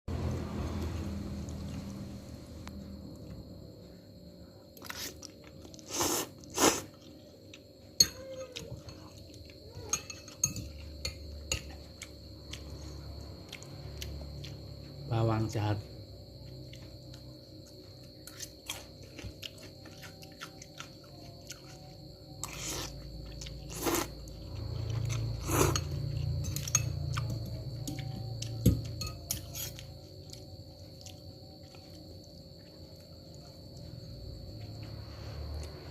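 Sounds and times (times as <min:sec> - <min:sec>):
crunchy chewing: 0:04.7 - 0:15.0, 0:16.3 - 0:28.6, 0:29.2 - 0:35.9
chewing crunchy noodles: 0:04.8 - 0:07.7, 0:16.5 - 0:27.3.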